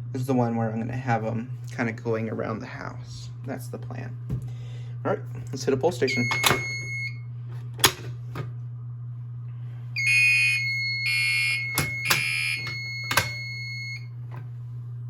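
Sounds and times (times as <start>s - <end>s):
low steady hum: 0.0s - 15.0s
pull station click: 6.1s - 6.9s, 11.0s - 14.0s
steady high alarm tone: 6.1s - 7.2s, 10.0s - 14.1s
fire alarm horn pulses: 6.1s - 7.3s, 10.0s - 14.2s.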